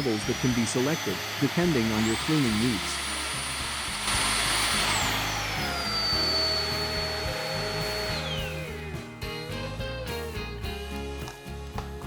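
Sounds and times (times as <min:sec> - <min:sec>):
stick vacuum motor whining: 0:00.0 - 0:09.0.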